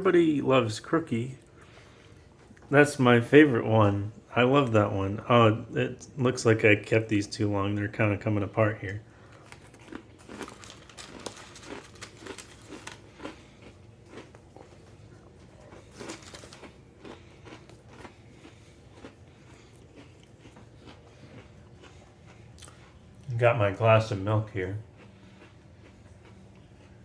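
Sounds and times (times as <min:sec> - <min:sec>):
cookie being bitten and chewed: 0:08.8 - 0:23.4, 0:24.1 - 0:27.0.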